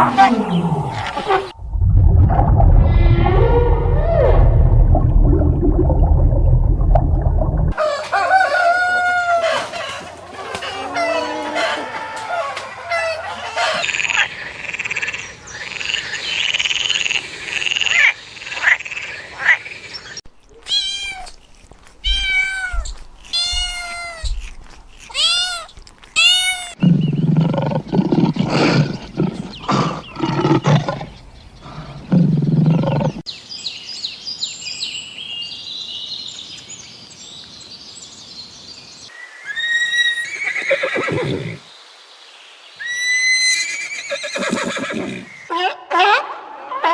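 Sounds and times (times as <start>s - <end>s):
low pulsing animal calls: 2.4s - 6.4s, 25.1s - 33.2s.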